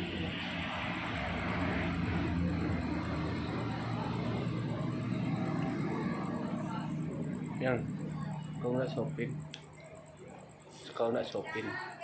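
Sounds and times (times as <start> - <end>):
vehicle passing on road: 0.0 - 9.4.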